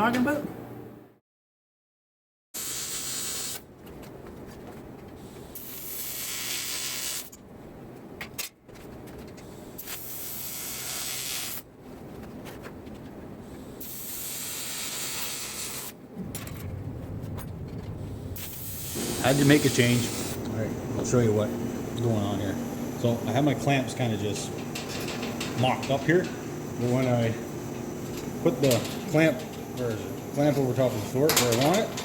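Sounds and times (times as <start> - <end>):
welder arc hissing: 2.6 - 3.6, 5.5 - 7.3, 9.8 - 11.6, 13.8 - 16.0, 18.4 - 31.2
steady low hum: 16.0 - 32.0.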